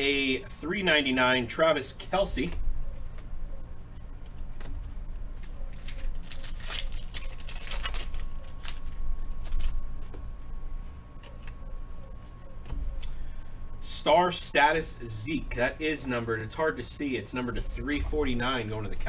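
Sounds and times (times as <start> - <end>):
steady low hum: 0.0 - 19.0
trading cards flipping and rustling: 4.2 - 13.2.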